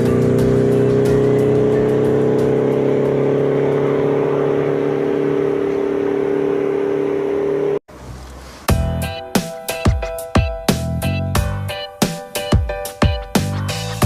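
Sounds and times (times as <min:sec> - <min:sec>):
rising synthesizer drone: 0:00.0 - 0:07.8.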